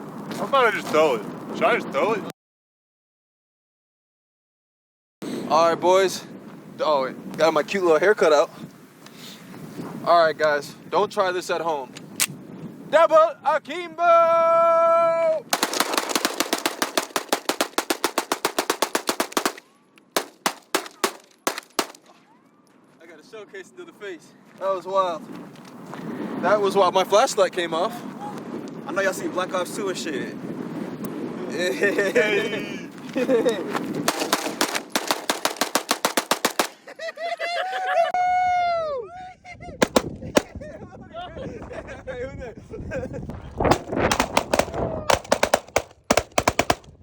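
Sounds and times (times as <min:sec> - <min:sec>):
pistol gunshots: 0:15.6 - 0:19.6, 0:20.2 - 0:22.0, 0:34.1 - 0:36.8, 0:39.8 - 0:40.6, 0:43.7 - 0:46.9.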